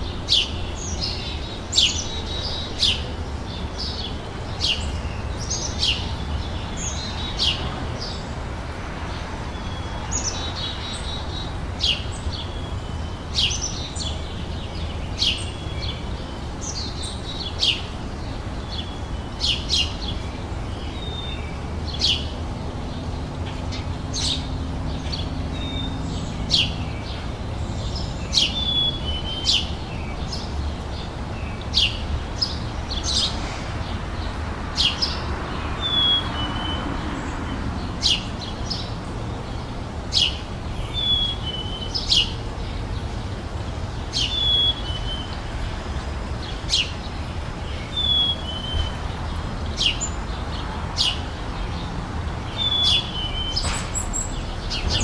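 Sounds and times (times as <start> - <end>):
songbirds chirping: 0.0 - 55.0.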